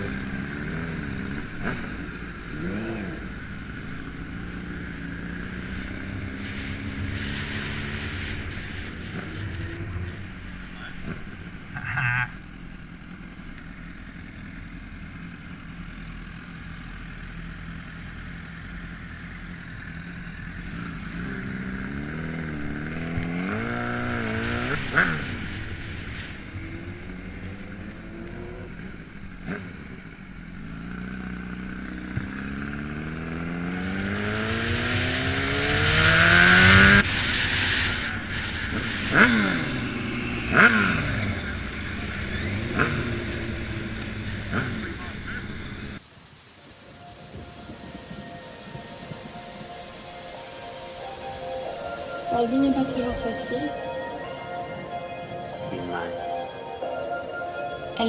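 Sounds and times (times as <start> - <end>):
motorcycle engine revving: 0.0 - 46.3
motorcycle engine accelerating: 0.0 - 54.5.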